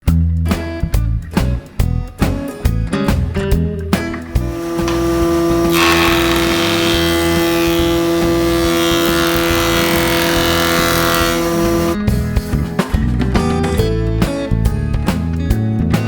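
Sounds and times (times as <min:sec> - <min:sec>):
planer cutting hiss: 0:04.3 - 0:12.0
planer machine hum: 0:04.3 - 0:12.0.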